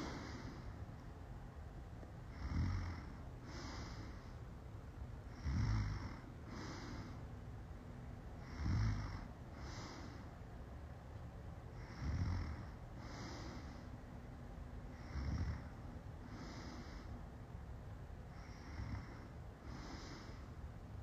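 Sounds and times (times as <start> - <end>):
woman snoring: 0.0 - 0.6, 2.3 - 4.2, 5.3 - 7.2, 8.4 - 10.2, 11.8 - 13.6, 14.9 - 17.1, 18.4 - 20.4.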